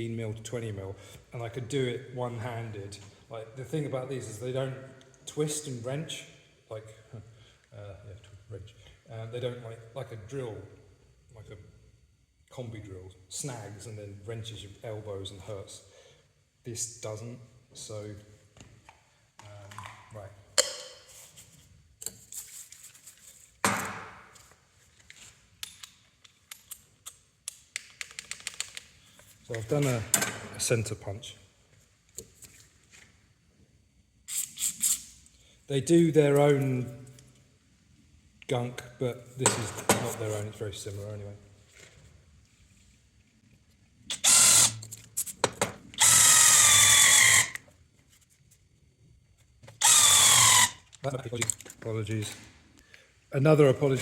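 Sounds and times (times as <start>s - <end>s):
impact wrench drilling steel: 44.1s - 44.9s, 46.0s - 47.6s, 49.8s - 50.8s.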